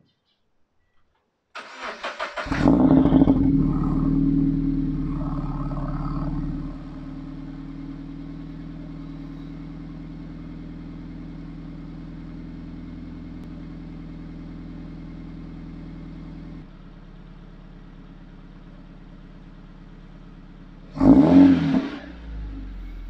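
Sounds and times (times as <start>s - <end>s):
car engine idling: 1.6s - 23.0s.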